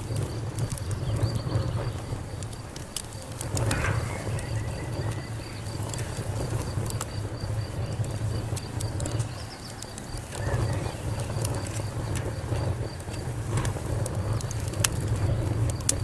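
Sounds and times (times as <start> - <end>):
fire crackling and popping: 0.0 - 16.0
low rumble: 3.4 - 9.5.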